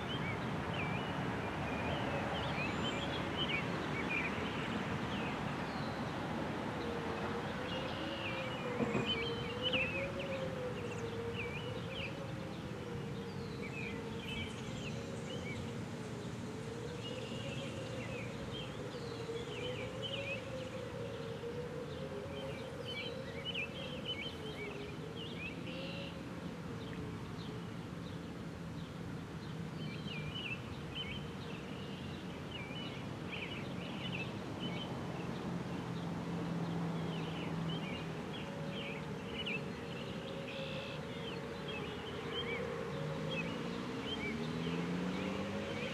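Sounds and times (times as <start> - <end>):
distant wavering warning sirens: 0.0 - 45.9
steady siren tone: 7.2 - 26.0, 37.2 - 45.9.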